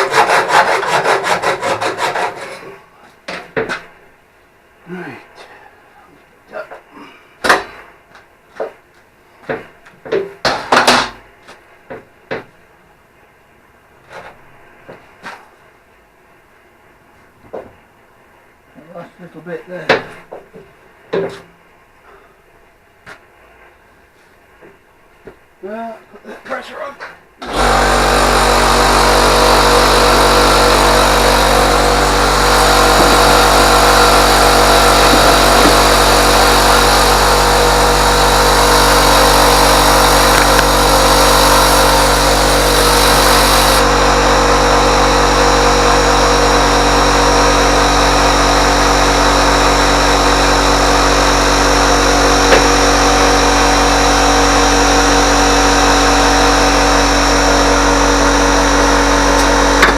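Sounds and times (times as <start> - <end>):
power tool motor running: 27.4 - 59.9.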